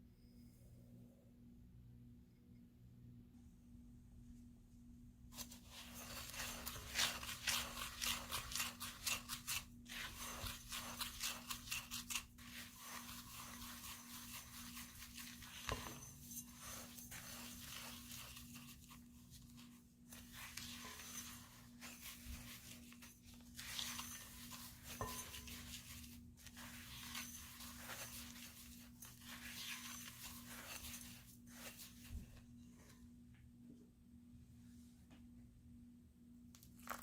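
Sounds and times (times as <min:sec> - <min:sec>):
scraping and rubbing strokes: 0:05.4 - 0:33.0.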